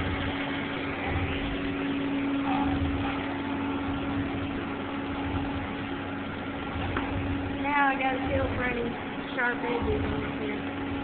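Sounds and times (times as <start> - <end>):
machinery humming: 0.0 - 11.0.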